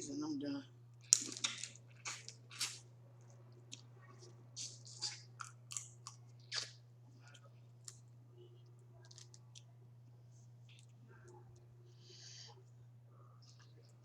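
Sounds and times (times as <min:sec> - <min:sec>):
steady low hum: 0:00.0 - 0:14.0
shell crunching and chewing: 0:01.0 - 0:08.1, 0:09.0 - 0:09.7.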